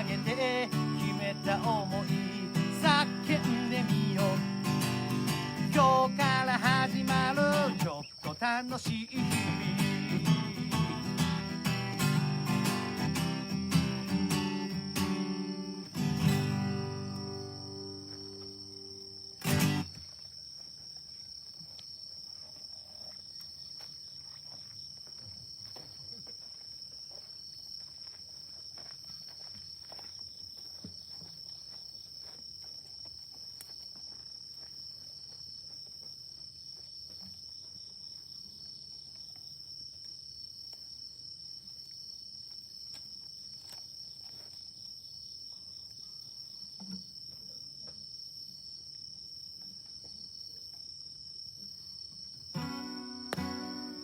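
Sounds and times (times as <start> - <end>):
insects trilling: 0.0 - 54.0.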